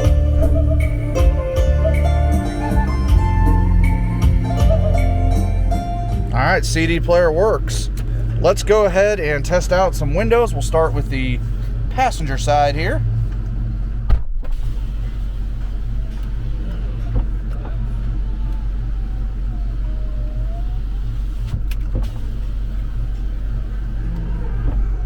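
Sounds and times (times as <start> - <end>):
power window motor running: 0.0 - 8.4
car engine idling: 0.0 - 25.0.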